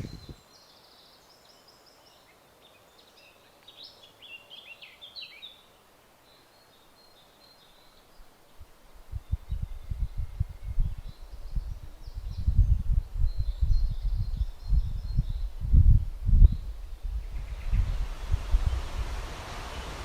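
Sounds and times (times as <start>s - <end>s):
small birds chirping: 0.0s - 19.0s
low rumbling thumps: 14.8s - 20.0s.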